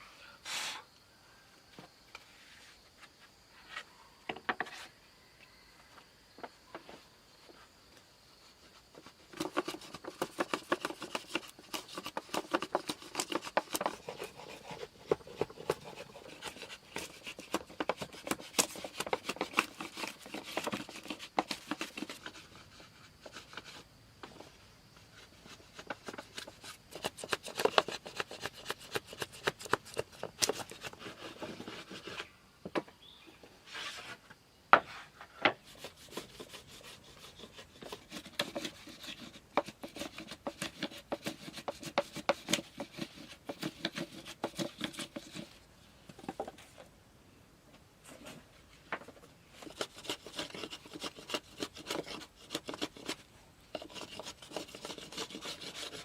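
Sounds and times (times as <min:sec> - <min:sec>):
hand tool rasping wood: 0:09.3 - 0:23.8, 0:25.1 - 0:32.3, 0:35.6 - 0:45.6, 0:49.6 - 0:56.0.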